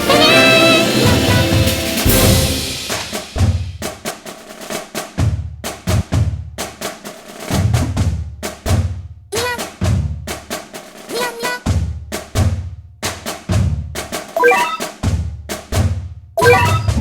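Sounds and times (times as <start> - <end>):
drum hits: 0.0 - 4.3, 16.4 - 17.0
pitch-bending synth sound: 16.4 - 17.0.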